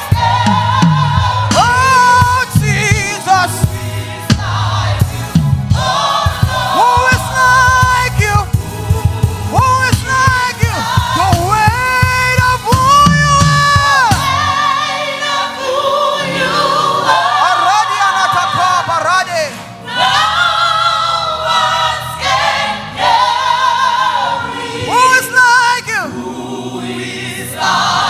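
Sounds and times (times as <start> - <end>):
bass: 0.0 - 14.5
drums: 0.0 - 14.5
choir singing gospel song: 0.0 - 28.0.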